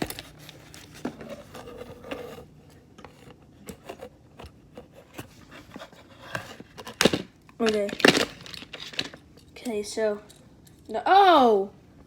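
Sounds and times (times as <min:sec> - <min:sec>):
packaging clicks and taps: 0:03.0 - 0:09.2.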